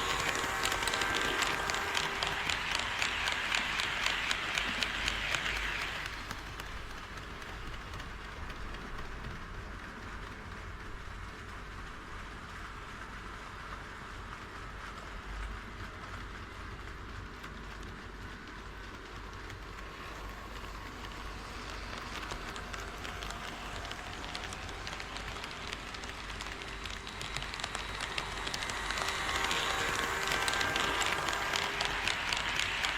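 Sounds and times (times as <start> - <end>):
model train wheels rattling on rails: 0.0 - 32.9
train track clicking: 0.0 - 32.9.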